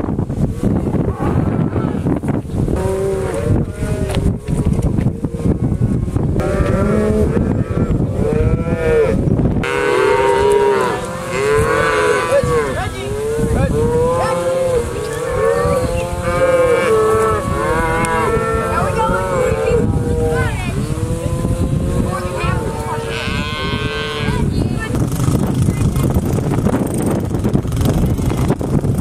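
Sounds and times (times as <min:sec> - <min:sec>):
low rumbling noise: 0:00.0 - 0:29.0
cattle mooing: 0:02.8 - 0:05.8, 0:06.4 - 0:24.8.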